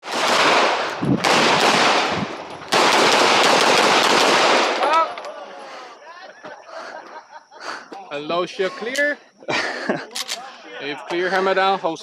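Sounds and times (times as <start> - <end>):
rapid pistol shots: 0.0 - 5.0.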